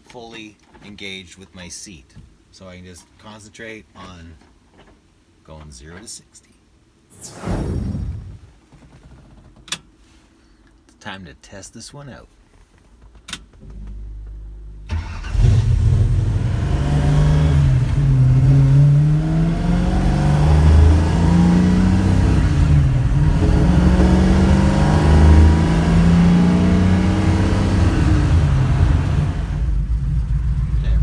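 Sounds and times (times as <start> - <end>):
car engine accelerating through gears: 14.9 - 31.0.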